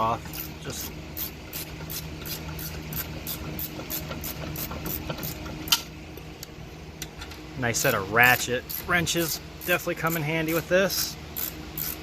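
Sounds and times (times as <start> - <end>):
ratchet wrench clicking: 1.2 - 5.8, 8.2 - 12.0.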